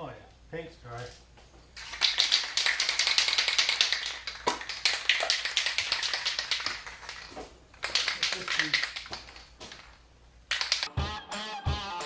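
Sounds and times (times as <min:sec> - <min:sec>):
spray can rattling: 0:01.8 - 0:10.9.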